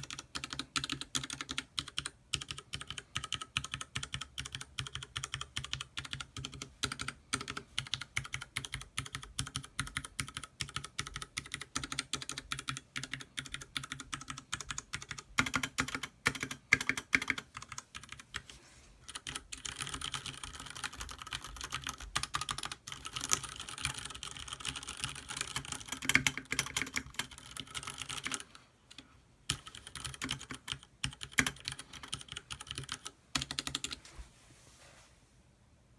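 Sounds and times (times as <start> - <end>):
mechanical keyboard typing: 0.0 - 34.0.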